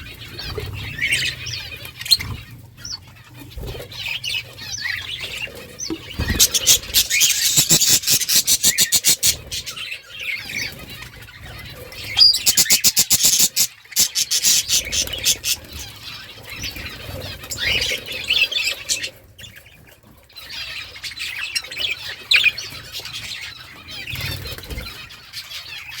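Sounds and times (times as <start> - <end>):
budgies chattering and chirping: 0.0 - 26.0.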